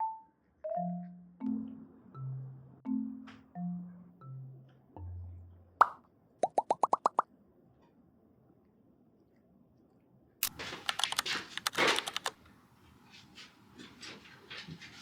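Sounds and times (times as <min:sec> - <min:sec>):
rising pop sound effects: 0:05.8 - 0:07.2
clatter of clicks and rustling: 0:10.4 - 0:12.4.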